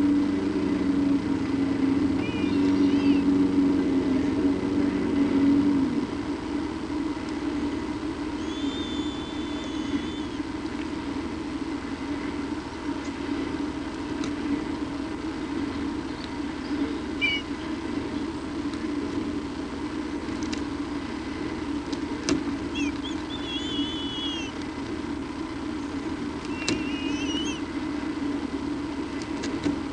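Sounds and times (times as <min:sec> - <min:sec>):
steady low hum: 0:00.0 - 0:29.9
short high chirps: 0:22.8 - 0:24.5, 0:26.5 - 0:27.6.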